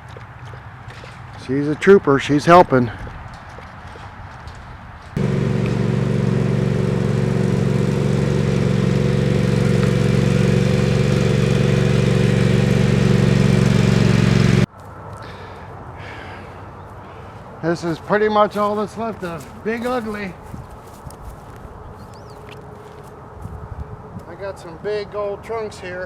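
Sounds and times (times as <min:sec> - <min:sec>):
small gasoline engine running: 0:05.2 - 0:14.7, 0:18.6 - 0:20.3.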